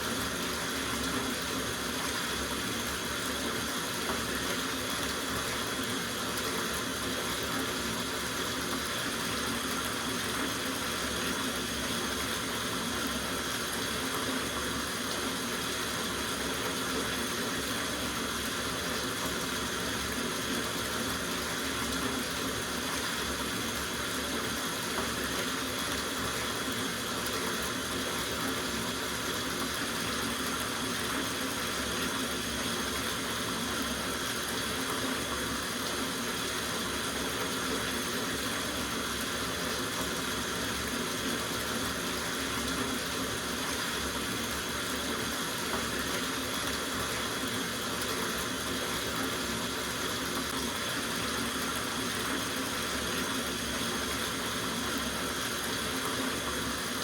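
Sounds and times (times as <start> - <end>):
tap water running into bathtub: 0.0 - 57.0.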